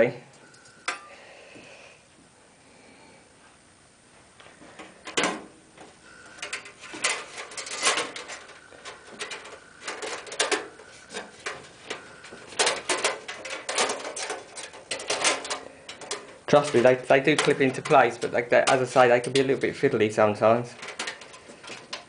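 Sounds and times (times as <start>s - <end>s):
thin metal clicking and rattling: 5.0s - 22.0s.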